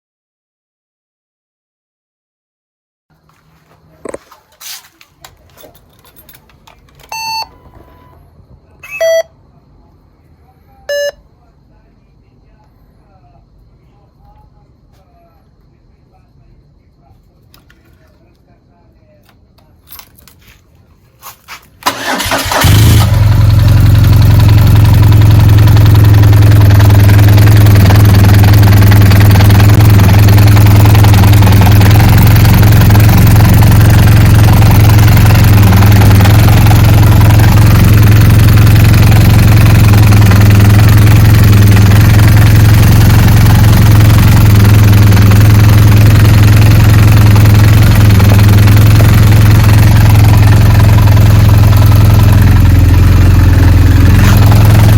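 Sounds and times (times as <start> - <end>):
motorcycle starter cranking: 21.8 - 24.6
motorcycle engine idling: 21.9 - 54.9.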